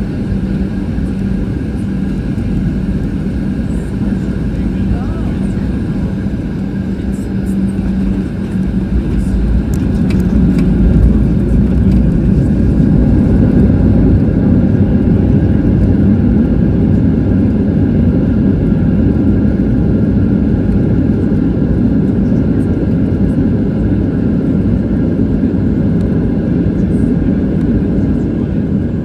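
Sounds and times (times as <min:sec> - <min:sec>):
airflow over fuselage: 0:00.0 - 0:29.0
jet engine rumble: 0:00.0 - 0:29.0.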